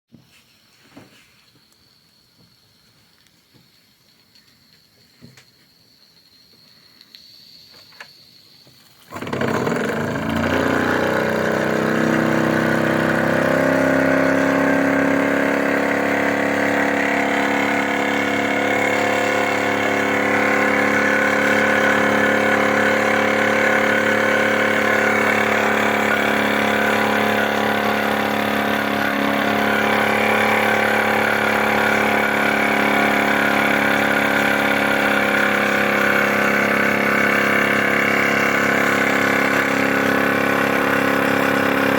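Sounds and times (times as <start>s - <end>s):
large machinery loud drone: 9.1s - 41.9s.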